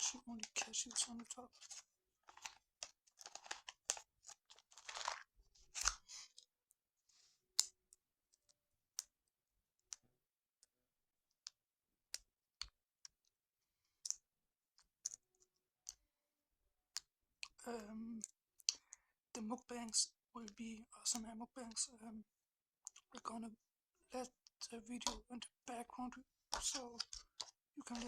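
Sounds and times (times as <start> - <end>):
rustling and scraping: 0.5 - 6.0.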